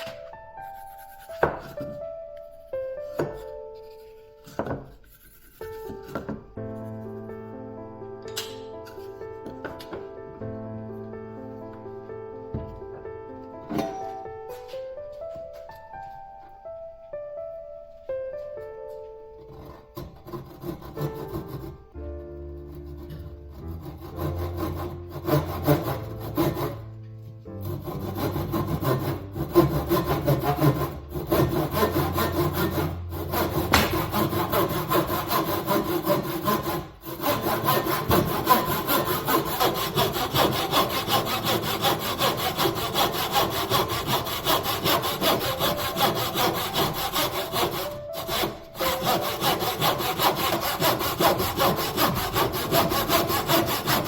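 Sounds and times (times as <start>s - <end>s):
saw cutting through wood: 19.4s - 21.8s, 22.6s - 26.9s, 27.5s - 54.0s.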